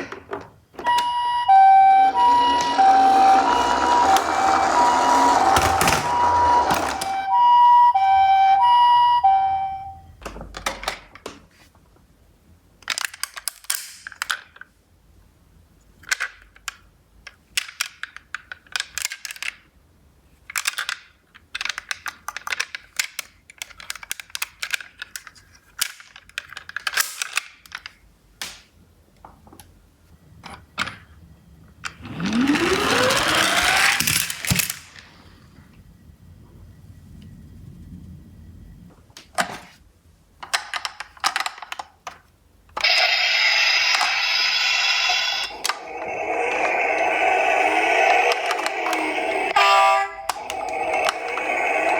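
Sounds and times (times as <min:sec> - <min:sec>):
toy two-tone siren: 0:00.8 - 0:10.1, 0:32.1 - 0:34.7, 0:42.8 - 0:51.9
toy cars clattering: 0:01.8 - 0:07.2, 0:12.8 - 0:14.7, 0:16.0 - 0:19.7, 0:20.4 - 0:28.0, 0:31.8 - 0:35.3, 0:40.4 - 0:47.2
loud rising sweep: 0:01.9 - 0:07.3, 0:32.1 - 0:34.5, 0:45.2 - 0:49.6, 0:50.3 - 0:51.9.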